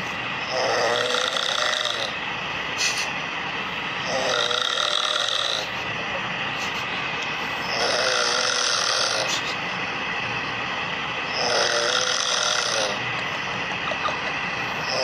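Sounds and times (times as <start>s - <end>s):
person snoring: 0.5s - 2.2s, 4.0s - 5.8s, 7.6s - 9.4s, 11.3s - 13.0s.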